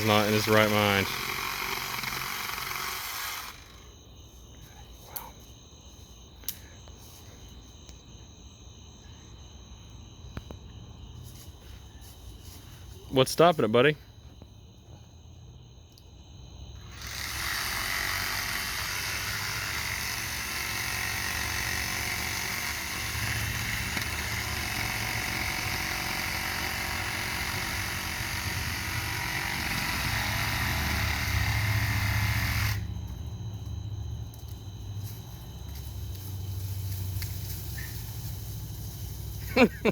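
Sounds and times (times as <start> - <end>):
reciprocating saw cutting tree trunk: 0.0 - 3.8, 16.9 - 32.9.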